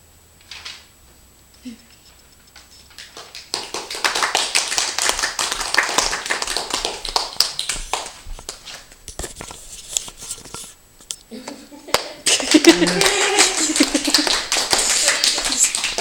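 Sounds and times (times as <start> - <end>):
audience clapping: 2.9 - 8.9, 11.9 - 16.0.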